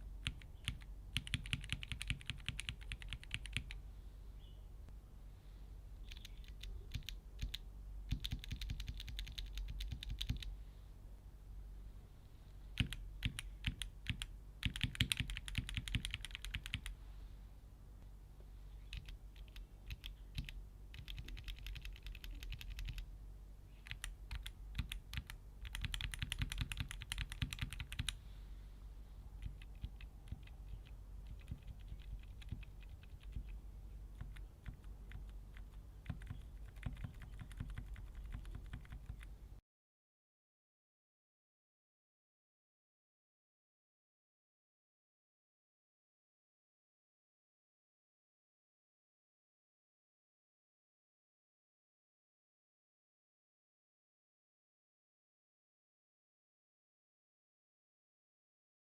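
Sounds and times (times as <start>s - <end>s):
mechanical keyboard typing: 0.2s - 3.8s, 6.1s - 10.5s, 12.8s - 16.9s, 18.9s - 23.1s, 23.8s - 28.2s, 29.4s - 33.6s, 34.2s - 39.3s.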